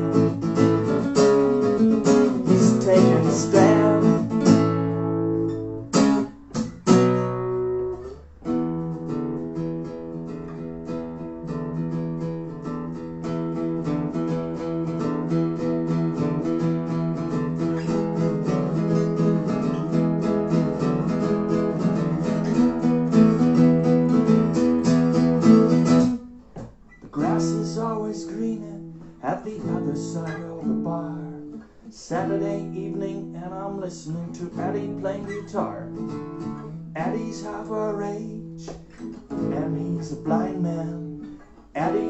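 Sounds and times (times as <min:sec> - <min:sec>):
acoustic guitars strumming: 0:00.0 - 0:42.0.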